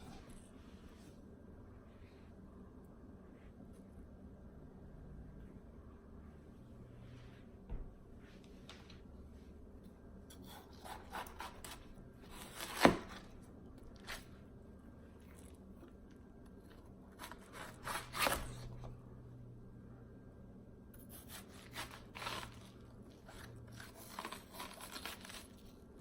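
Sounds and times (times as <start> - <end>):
watermelon crunching: 10.4 - 18.9, 21.0 - 26.0.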